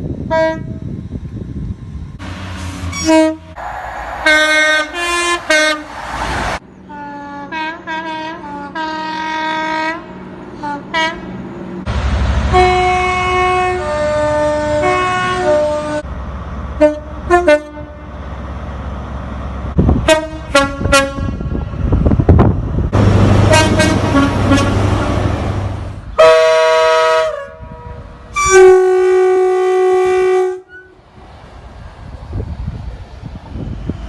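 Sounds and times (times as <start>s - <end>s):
train running noise: 0.0s - 9.0s, 9.6s - 29.1s, 30.0s - 34.0s
train horns: 0.3s - 0.9s, 2.3s - 11.4s, 12.4s - 16.0s, 16.8s - 18.2s, 20.0s - 21.7s, 23.3s - 25.4s, 26.1s - 31.0s.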